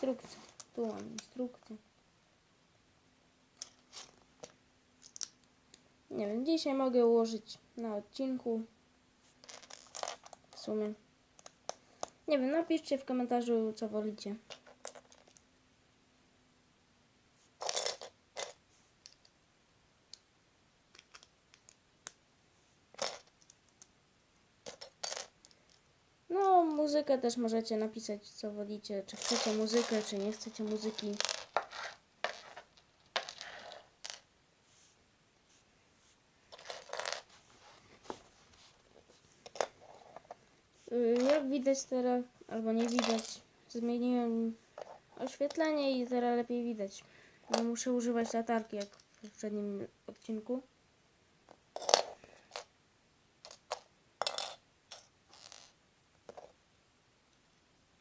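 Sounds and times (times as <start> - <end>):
plastic pieces clicking: 3.6 - 5.5, 20.9 - 22.2, 24.6 - 25.8, 42.8 - 43.4.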